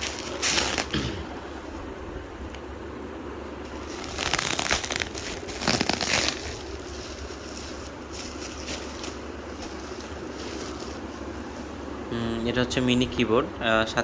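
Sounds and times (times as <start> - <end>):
packaging crinkling and tearing: 0.0 - 1.0, 3.7 - 11.0
packaging rustling: 0.0 - 1.0, 3.7 - 11.4.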